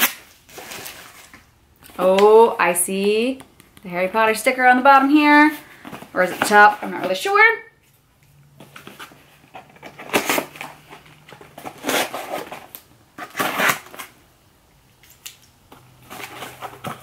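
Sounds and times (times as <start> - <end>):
paper tearing and crinkling: 8.8 - 14.2.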